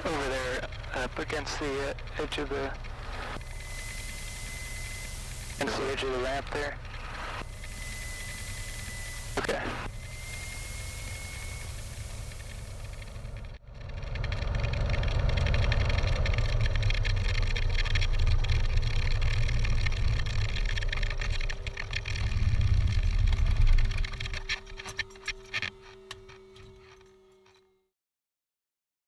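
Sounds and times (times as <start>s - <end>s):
aircraft piston engine running: 0.0s - 27.0s
propeller winding down: 0.0s - 27.6s
faint steady whine: 0.0s - 27.7s.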